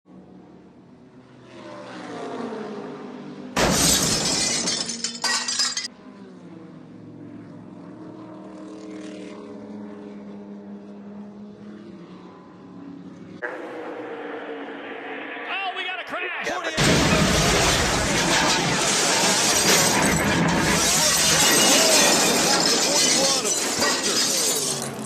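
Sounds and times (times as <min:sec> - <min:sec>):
race car engines droning: 0:00.1 - 0:25.0
crashing shattering clatter: 0:03.6 - 0:05.9, 0:16.8 - 0:25.0.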